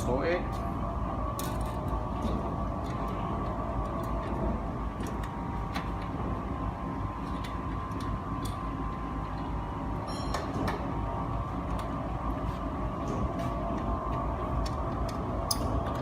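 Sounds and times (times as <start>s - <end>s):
workshop machinery hum: 0.0s - 16.0s
metal parts clicking and tapping: 14.6s - 16.0s.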